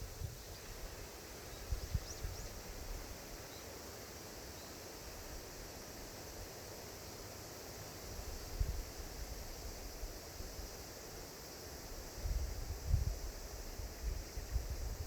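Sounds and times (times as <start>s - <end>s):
rustling leaves: 0.0s - 15.0s
wind: 0.0s - 15.0s.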